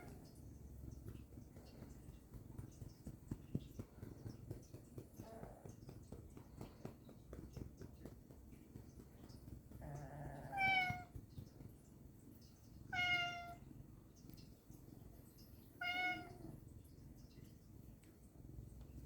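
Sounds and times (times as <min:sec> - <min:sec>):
cat meowing: 0:09.8 - 0:11.2, 0:12.9 - 0:13.6, 0:15.8 - 0:16.5.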